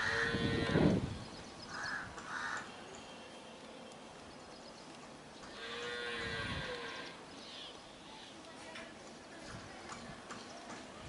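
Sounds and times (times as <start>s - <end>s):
starlings harsh calls: 0.0s - 3.2s.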